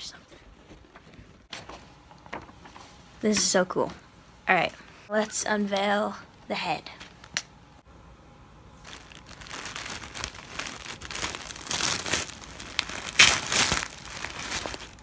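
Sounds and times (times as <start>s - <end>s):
packaging rustling: 8.8s - 15.0s.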